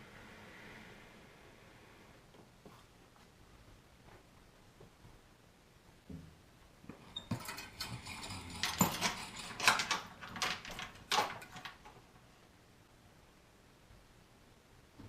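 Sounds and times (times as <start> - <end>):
hard objects clattering: 7.3 - 12.0.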